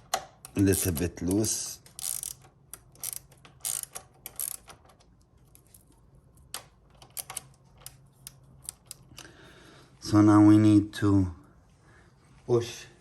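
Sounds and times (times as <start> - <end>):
hand tools clicking and tapping: 0.0 - 5.1.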